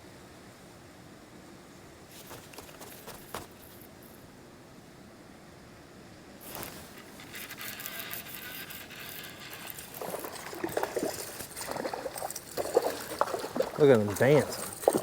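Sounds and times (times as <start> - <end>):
fish splashing in water: 9.6 - 15.0.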